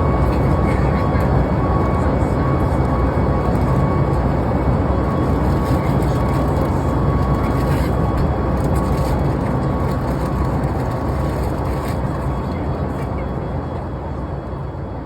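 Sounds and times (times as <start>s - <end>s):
airplane cabin rumble: 0.0s - 15.0s.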